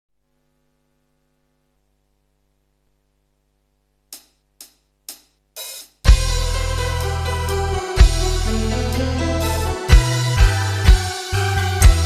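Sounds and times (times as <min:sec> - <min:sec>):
faint electrical hum: 0:00.1 - 0:06.1
drum count-in ticks: 0:04.1 - 0:06.4, 0:11.8 - 0:12.0.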